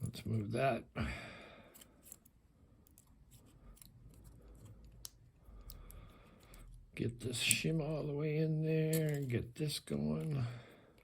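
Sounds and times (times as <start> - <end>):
small metal parts clicking: 8.9 - 9.4.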